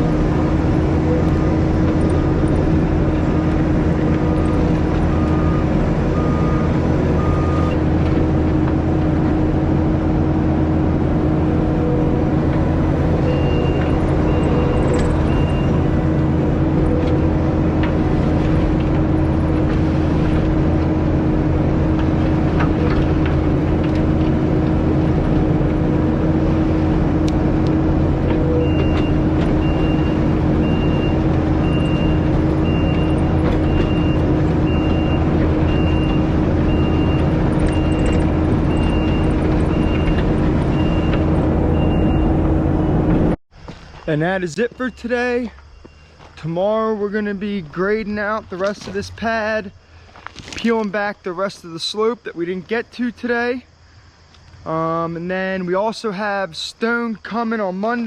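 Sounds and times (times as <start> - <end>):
diesel engine drone: 0.0 - 58.0
faint backup alarm beeps: 4.3 - 7.8, 13.2 - 15.8, 28.5 - 43.0, 44.0 - 46.4.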